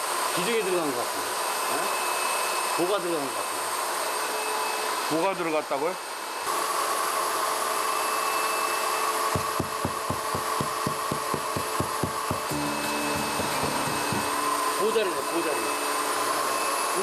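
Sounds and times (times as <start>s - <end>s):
core drill drilling into wall: 6.5s - 17.0s
drill bit knocking on wood: 9.3s - 14.6s.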